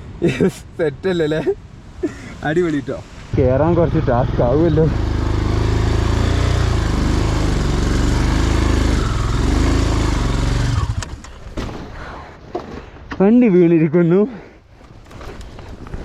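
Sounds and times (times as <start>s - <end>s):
motorcycle engine revving: 3.7s - 11.4s
motorcycle falling over: 10.8s - 13.0s, 14.8s - 16.0s.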